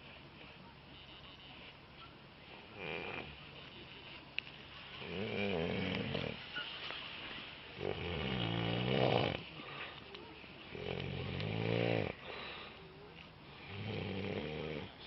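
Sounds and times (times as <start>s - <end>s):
quiet breathing: 0.0s - 15.0s
man snoring: 2.7s - 3.4s, 5.0s - 6.4s, 7.8s - 9.4s, 10.7s - 12.2s, 13.6s - 15.0s.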